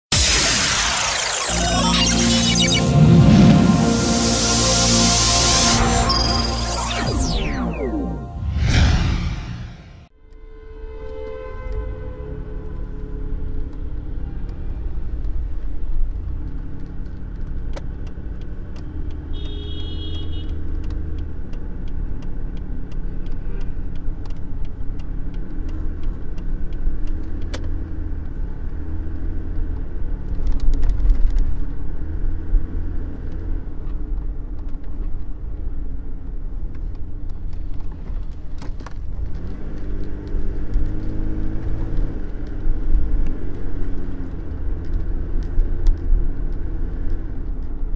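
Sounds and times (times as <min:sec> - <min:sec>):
brief high tone: 0:00.1 - 0:09.6
car engine and road rumble: 0:12.2 - 0:47.9
turn signal ticking: 0:15.0 - 0:28.4.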